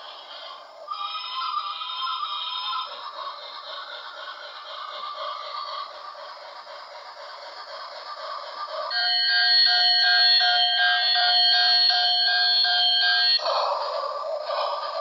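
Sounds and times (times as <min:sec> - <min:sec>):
pulsing electronic alarm tone: 0:08.9 - 0:13.4.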